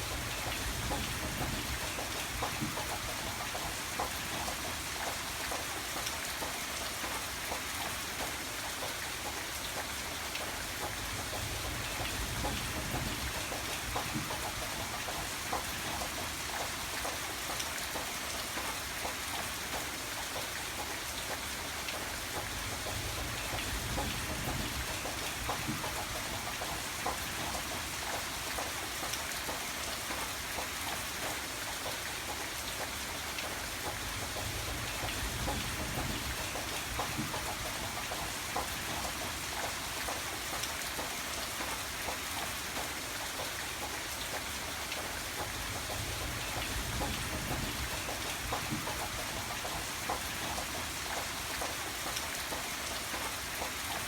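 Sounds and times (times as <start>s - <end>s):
raindrops ticking on a surface: 0.0s - 54.0s
rain hissing: 32.2s - 42.9s, 43.7s - 54.0s.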